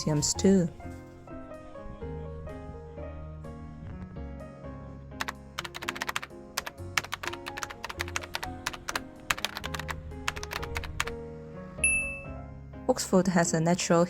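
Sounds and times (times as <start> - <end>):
background music with held notes: 0.0 - 14.0
sharp typing-like clicks: 5.2 - 11.1.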